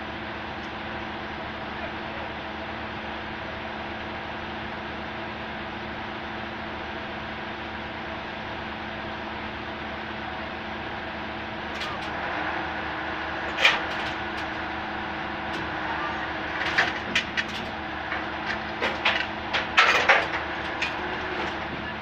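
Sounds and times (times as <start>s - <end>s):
machinery engine running: 7.9s - 22.0s
metal knocks and clanks: 13.3s - 14.7s, 15.4s - 22.0s.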